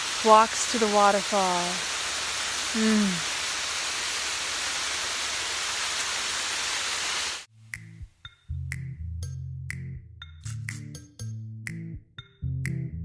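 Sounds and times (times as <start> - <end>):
waterfall rushing: 0.0 - 7.5.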